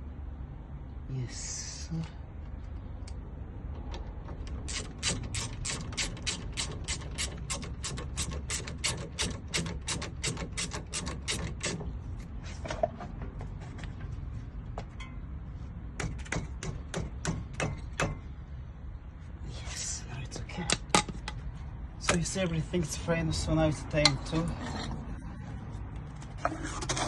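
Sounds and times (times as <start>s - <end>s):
ratchet wrench clicking: 4.5s - 11.8s.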